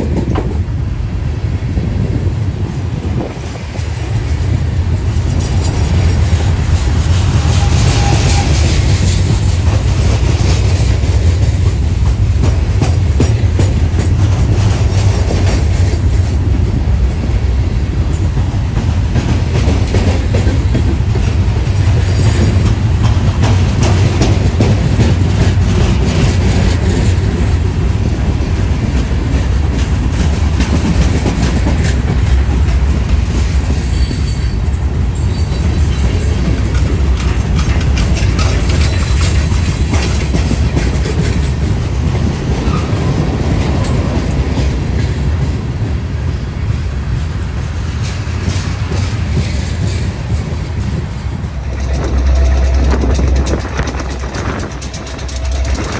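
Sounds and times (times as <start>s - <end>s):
train wheels clattering over rail joints: 2.0s - 45.9s, 46.7s - 55.9s
heavy low rumble: 50.0s - 55.9s.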